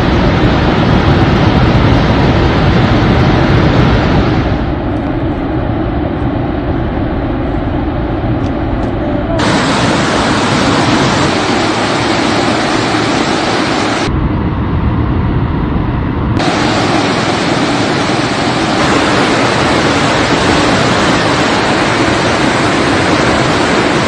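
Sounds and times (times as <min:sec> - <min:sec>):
water roaring through dam gates: 0:08.6 - 0:14.1, 0:16.4 - 0:24.0.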